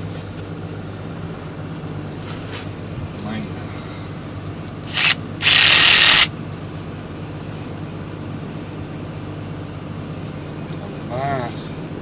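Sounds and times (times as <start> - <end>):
cordless ratchet running: 4.8 - 6.3.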